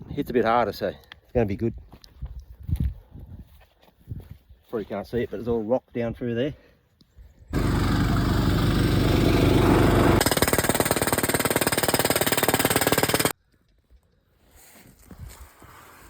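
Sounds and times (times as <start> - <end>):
engine running: 7.6 - 11.2
pneumatic air hammer hammering: 9.1 - 13.3.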